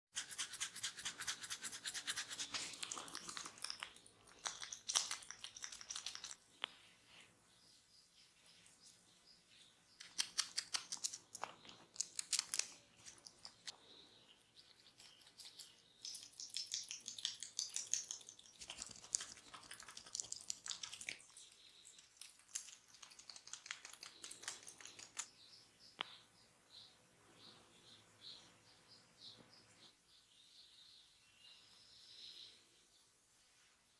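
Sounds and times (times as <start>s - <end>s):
fingers crackling and clicking: 0.2s - 6.8s, 10.0s - 13.8s, 14.6s - 25.3s.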